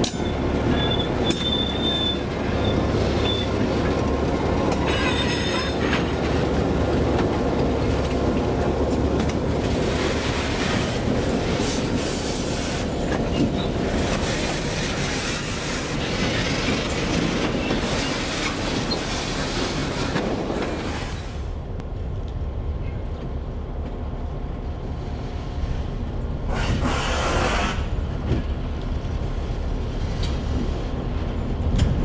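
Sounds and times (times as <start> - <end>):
wheels clattering over rail joints: 0.0 - 21.2
diesel locomotive rumble: 0.0 - 32.0
high wheel squeal: 0.1 - 3.6, 4.8 - 6.0.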